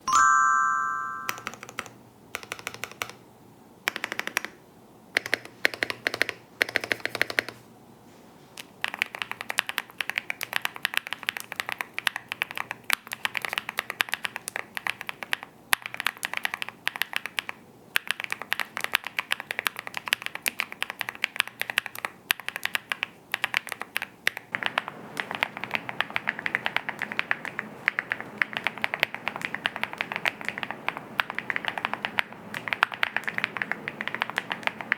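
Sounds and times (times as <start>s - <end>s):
brief chime: 0.0s - 1.4s
mechanical keyboard typing: 0.9s - 3.2s, 3.8s - 7.6s, 8.6s - 34.9s.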